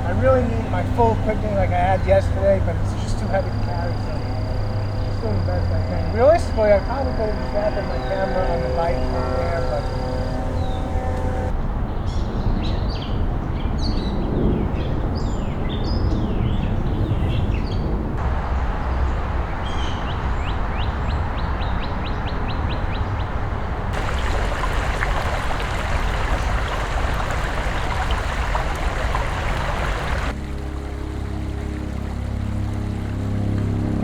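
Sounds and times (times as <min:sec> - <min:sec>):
bird trill: 0:00.0 - 0:11.5, 0:24.0 - 0:30.3
songbirds chirping: 0:00.0 - 0:11.5, 0:18.8 - 0:30.4
steady hiss: 0:00.0 - 0:11.5, 0:24.0 - 0:30.3
steady low rumble: 0:00.0 - 0:11.5.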